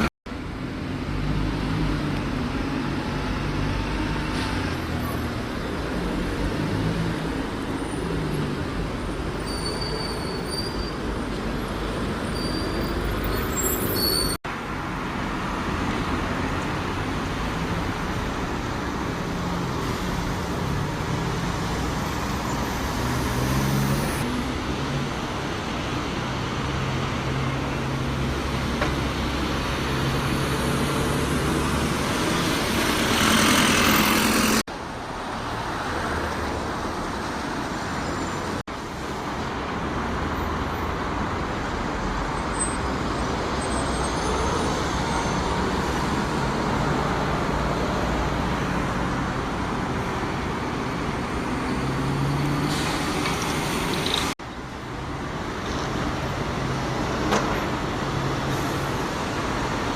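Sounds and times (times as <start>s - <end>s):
vehicles passing: 0.0s - 59.9s.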